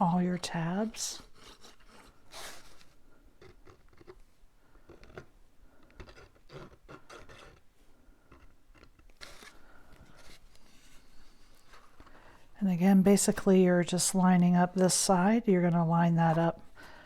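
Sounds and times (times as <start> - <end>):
cardstock rustling and scraping: 0.3 - 4.2, 8.3 - 12.2.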